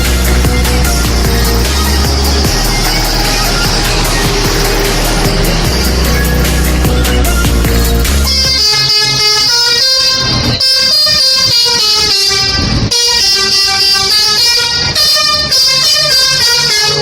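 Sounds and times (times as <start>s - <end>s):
multi-tone air horn melody: 0.0s - 17.0s.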